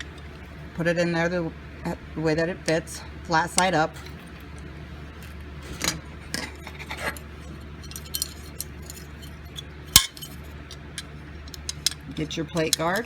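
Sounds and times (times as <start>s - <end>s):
metal parts clicking and clinking: 7.0s - 13.0s.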